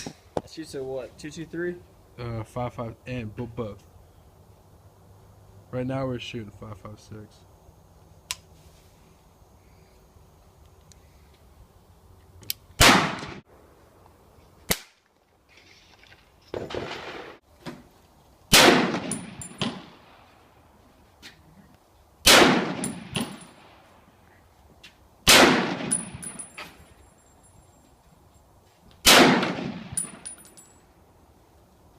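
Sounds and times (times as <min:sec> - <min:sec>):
rifle shots: 0:12.8 - 0:13.4, 0:16.5 - 0:17.4, 0:18.5 - 0:20.1, 0:22.2 - 0:23.6, 0:25.3 - 0:26.4, 0:29.0 - 0:30.3.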